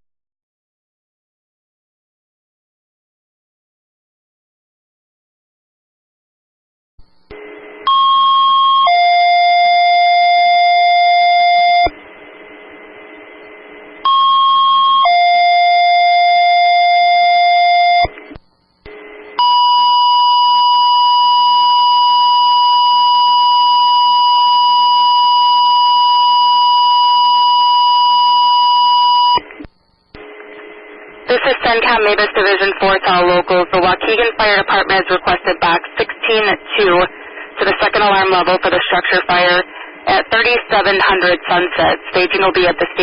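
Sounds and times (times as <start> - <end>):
radio hiss: 29.4 - 43.0.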